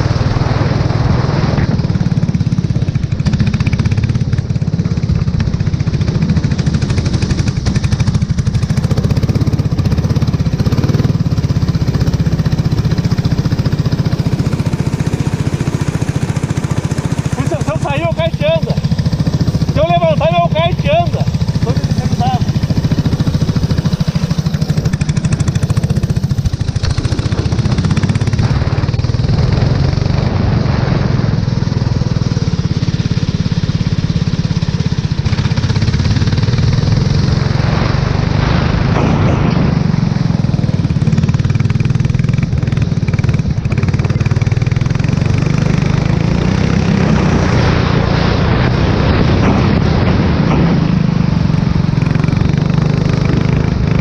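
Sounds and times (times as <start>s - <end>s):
racing car engine: 6.3s - 34.8s.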